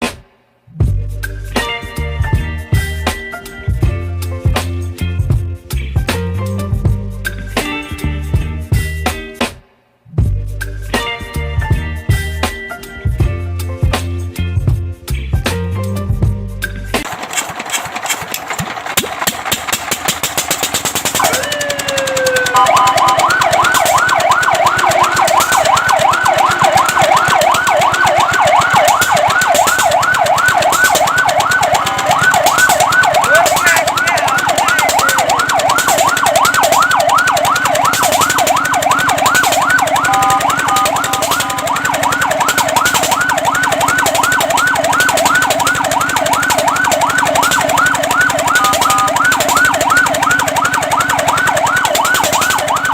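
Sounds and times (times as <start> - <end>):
rattling mechanical noise: 16.8 - 52.9
fire truck siren yelping: 17.0 - 52.9.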